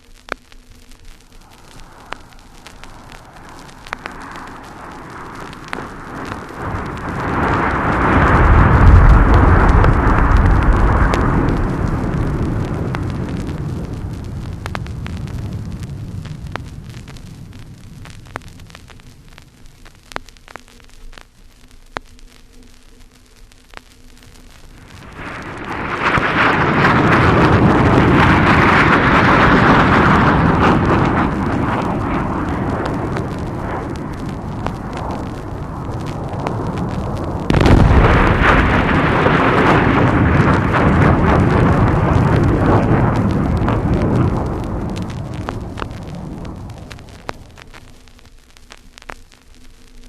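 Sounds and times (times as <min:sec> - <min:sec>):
record crackle and clicks: 0:00.0 - 0:50.0
low rumble: 0:00.8 - 0:20.1, 0:24.4 - 0:48.6
loud rushing roar: 0:01.4 - 0:15.9, 0:24.8 - 0:47.6.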